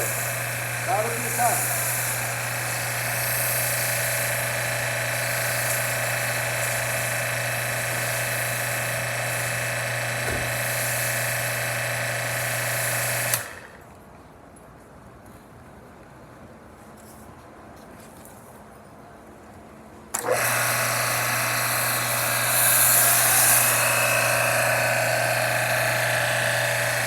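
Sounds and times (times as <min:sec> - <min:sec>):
water spray hissing: 0:00.0 - 0:09.5, 0:22.0 - 0:27.0
pressure washer running: 0:00.0 - 0:13.8, 0:20.2 - 0:27.0.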